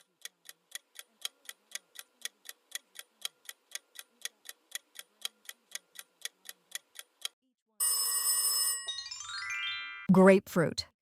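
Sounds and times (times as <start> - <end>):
clock ticking: 0.0 - 7.4.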